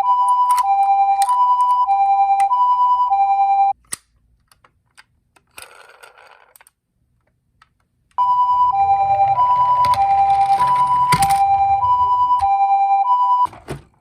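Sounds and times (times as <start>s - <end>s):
toy two-tone siren: 0.0s - 3.8s, 8.2s - 13.5s.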